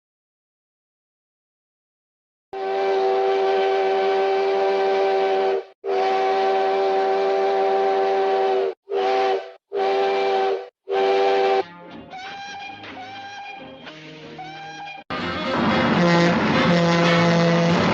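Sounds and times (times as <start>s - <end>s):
multi-chime train whistle: 2.6s - 15.1s.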